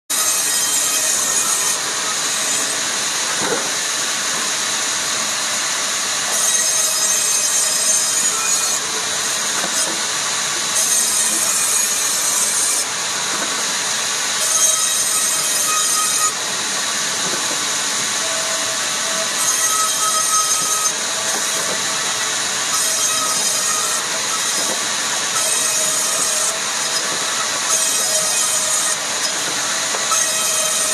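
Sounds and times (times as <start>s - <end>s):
saw cutting wood: 0.1s - 30.9s.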